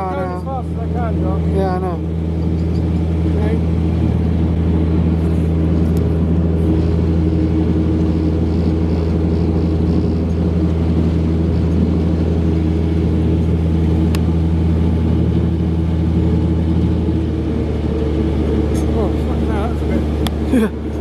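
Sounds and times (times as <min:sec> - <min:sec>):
diesel engine droning: 0:00.0 - 0:21.0.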